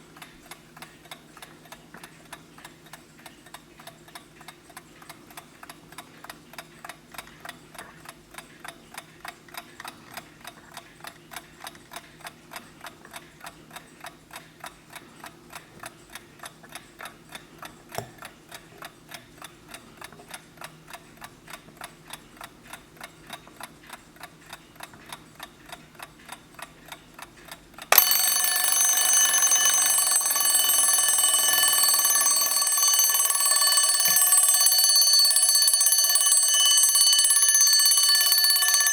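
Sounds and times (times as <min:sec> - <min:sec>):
alarm bell ringing: 0:27.9 - 0:38.9
alarm clock ticking: 0:27.9 - 0:38.9.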